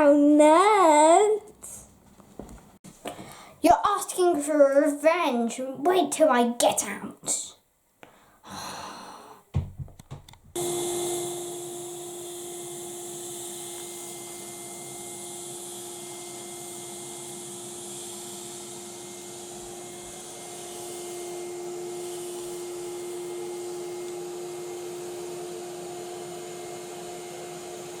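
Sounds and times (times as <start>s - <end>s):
vacuum cleaner running: 10.6s - 28.0s.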